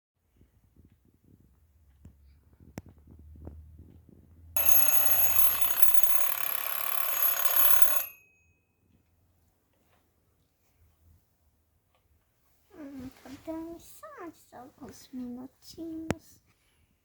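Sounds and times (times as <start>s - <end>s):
alarm clock bell ringing: 4.6s - 8.7s.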